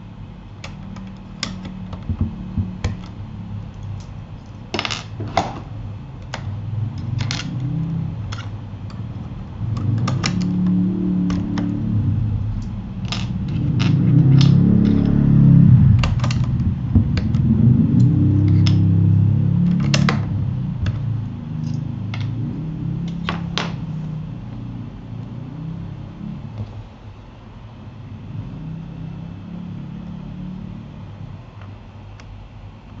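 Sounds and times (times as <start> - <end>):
plastic keyboard parts clicking: 0.6 - 4.1, 9.8 - 11.8, 16.0 - 18.8
loud low rumble: 5.5 - 26.6.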